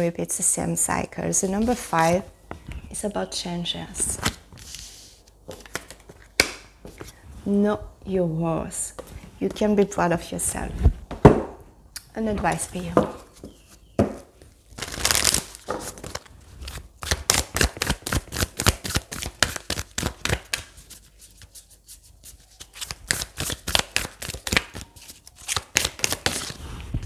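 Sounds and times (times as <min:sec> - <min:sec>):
cards being shuffled: 0:04.1 - 0:07.1, 0:14.7 - 0:26.6.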